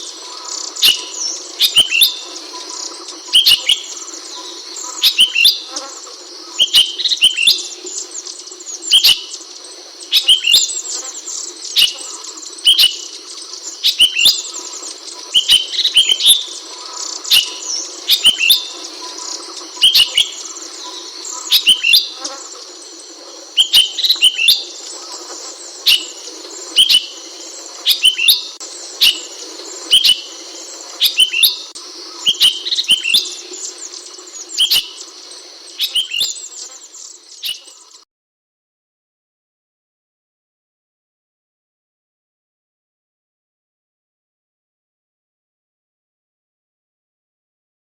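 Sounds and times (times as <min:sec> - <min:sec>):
bird chirping: 0:00.0 - 0:38.0
steady high hiss: 0:00.0 - 0:38.0.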